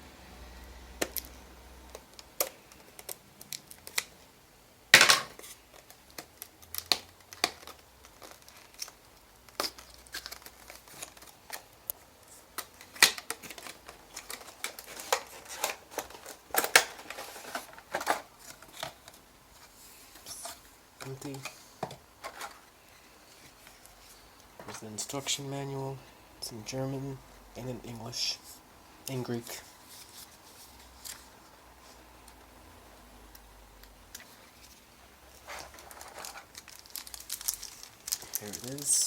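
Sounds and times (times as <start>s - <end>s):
loud packaging crackle: 5.0s - 19.2s, 34.6s - 39.0s
packaging crinkling and rustling: 5.0s - 21.6s, 22.2s - 25.4s, 34.1s - 39.0s.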